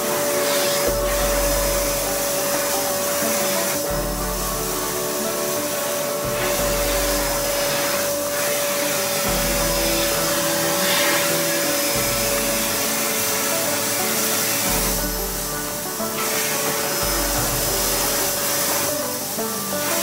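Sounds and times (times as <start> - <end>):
vacuum cleaner motor whine: 5.6 - 15.0.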